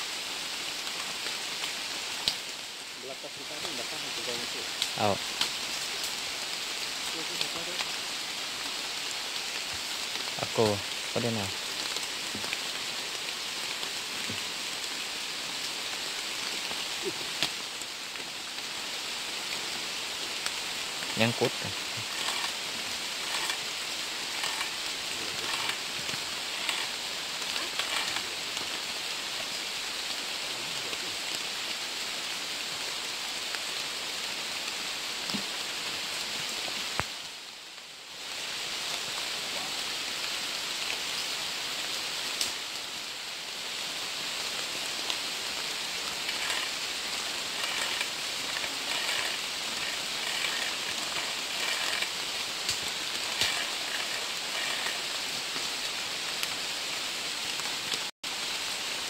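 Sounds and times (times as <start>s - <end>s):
rain falling: 0.0s - 59.0s.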